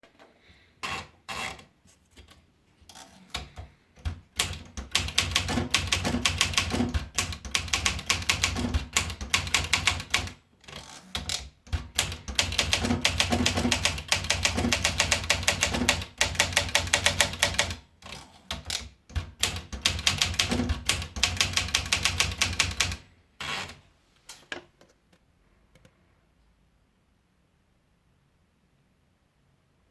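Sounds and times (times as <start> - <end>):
typewriter key strikes: 4.0 - 10.4, 11.1 - 17.8, 18.5 - 23.0.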